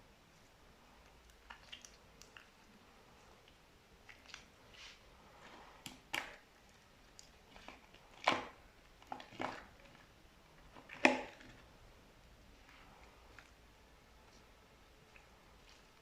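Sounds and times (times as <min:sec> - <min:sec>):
slime squishing and popping: 0:05.8 - 0:09.8.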